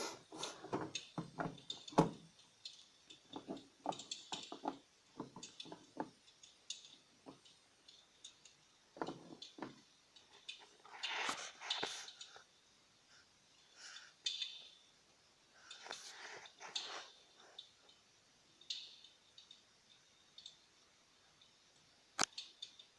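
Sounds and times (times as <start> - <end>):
light clicks and knocks: 0.3 - 12.4.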